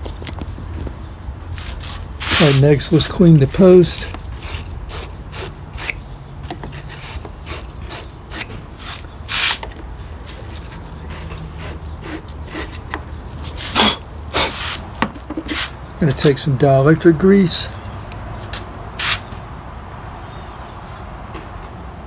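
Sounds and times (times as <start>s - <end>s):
metal scraping on lead: 2.2s - 14.1s.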